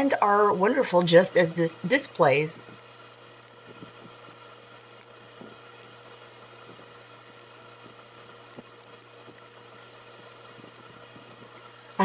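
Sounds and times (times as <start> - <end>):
faint background hum and hiss: 0.0 - 12.0
soft small ticks: 2.8 - 12.0.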